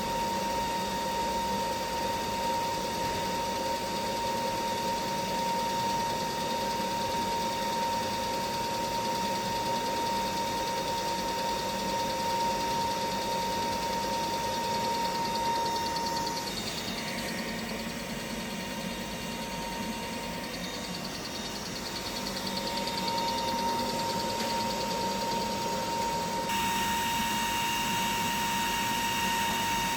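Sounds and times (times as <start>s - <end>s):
high-pitched electrical whine: 0.0s - 29.9s
electrical hum: 11.9s - 29.9s.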